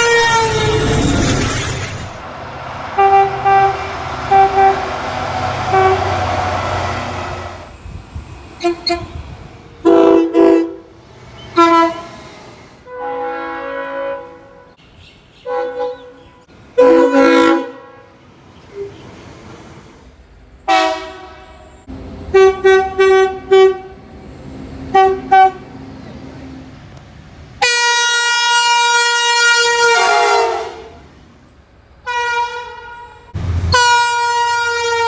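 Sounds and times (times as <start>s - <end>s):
train horn chord blasts: 0.0s - 0.8s, 2.8s - 7.4s, 9.8s - 11.0s, 11.6s - 12.2s, 12.8s - 14.8s, 15.4s - 18.2s, 20.7s - 21.6s, 22.3s - 24.1s, 27.6s - 31.0s, 32.1s - 35.0s.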